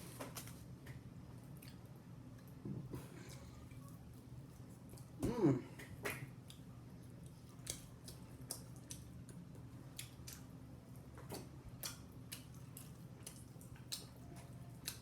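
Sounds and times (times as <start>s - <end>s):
faint low hum: 0.0s - 15.0s
mouth chewing: 5.8s - 10.5s, 11.3s - 15.0s.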